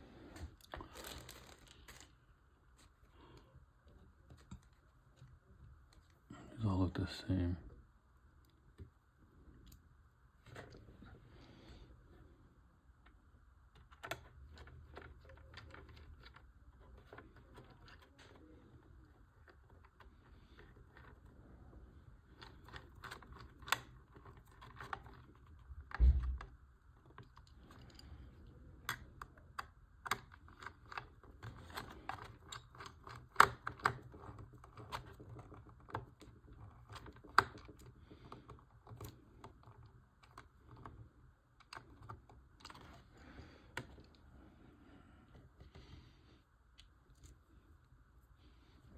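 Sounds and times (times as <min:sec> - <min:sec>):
plastic parts clicking: 0:22.3 - 0:28.1, 0:28.8 - 0:41.0.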